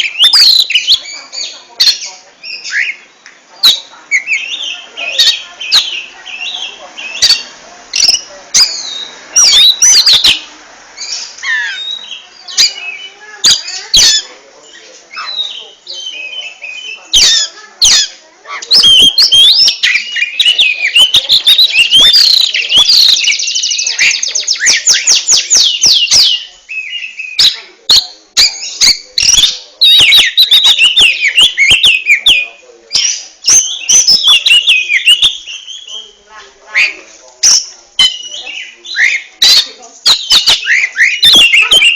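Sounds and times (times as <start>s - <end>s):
magpie-robin singing: 0.0s - 41.9s
songbird whistling song: 0.0s - 41.9s.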